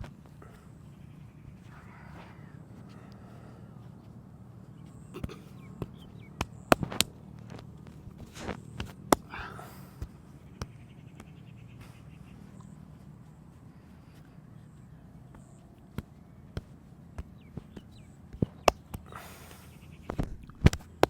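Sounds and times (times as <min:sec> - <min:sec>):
low steady hum: 0:00.0 - 0:21.0
massage hand smacks: 0:05.2 - 0:12.0, 0:15.2 - 0:21.0.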